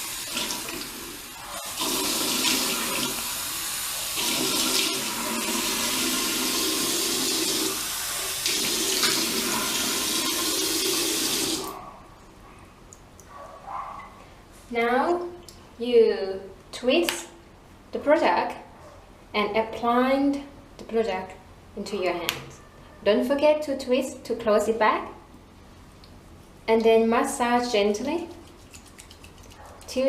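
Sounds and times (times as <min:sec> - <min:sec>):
tap water running into sink: 0:00.0 - 0:03.4, 0:04.1 - 0:11.8.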